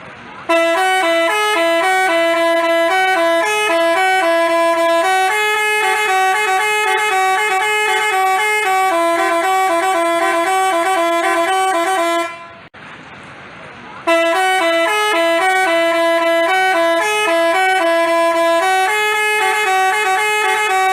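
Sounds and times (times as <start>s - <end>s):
musical bus horn tune: 0.4s - 12.7s, 14.0s - 20.9s.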